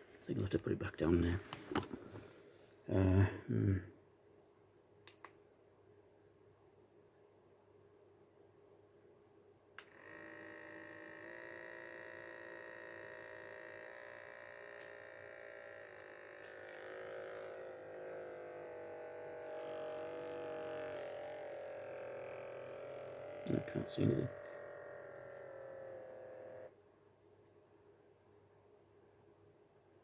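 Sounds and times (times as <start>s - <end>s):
electric pump whirring: 9.8s - 26.7s.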